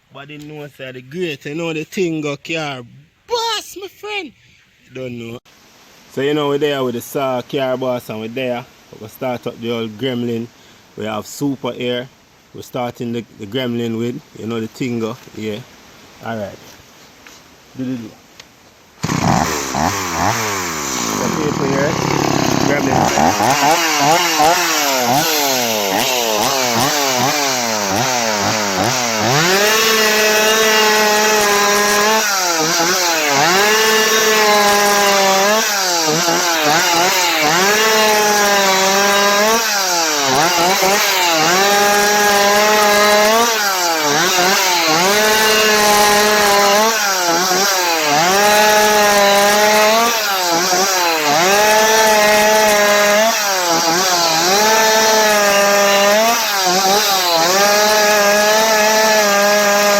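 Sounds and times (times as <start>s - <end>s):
chainsaw sawing wood: 19.0s - 59.9s.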